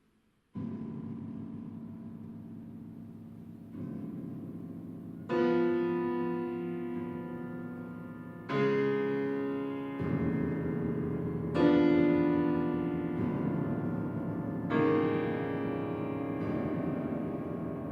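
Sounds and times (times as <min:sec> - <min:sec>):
piano playing heavy chords: 0:03.8 - 0:17.9.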